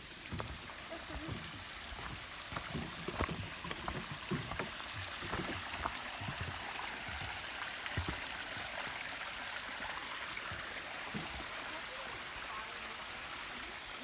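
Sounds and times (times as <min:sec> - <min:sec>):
creek water rushing: 0:00.0 - 0:14.0
soft low thumps: 0:00.3 - 0:08.4.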